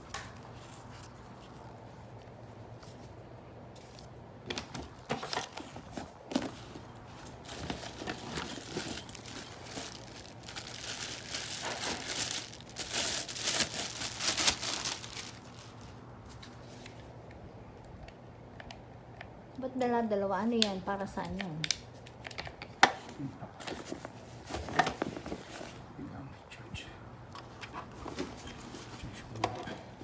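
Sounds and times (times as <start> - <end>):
packaging crinkling and rustling: 3.8 - 17.0.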